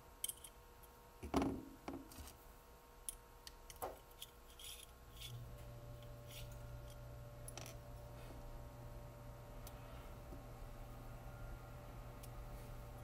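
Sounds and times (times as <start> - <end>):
low steady hum: 0.0 - 13.0
small parts clicking and knocking: 0.2 - 2.0, 3.0 - 5.4.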